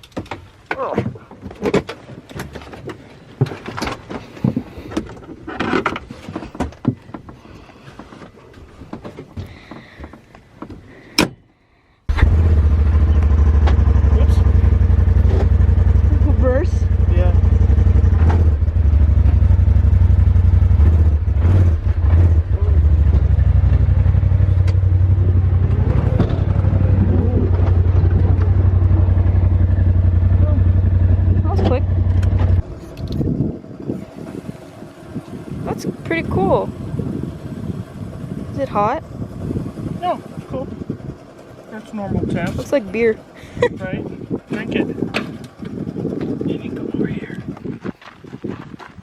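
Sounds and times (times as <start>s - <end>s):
loud engine rumble: 12.1s - 47.8s
knocks and rattles of vehicle door: 45.0s - 45.8s.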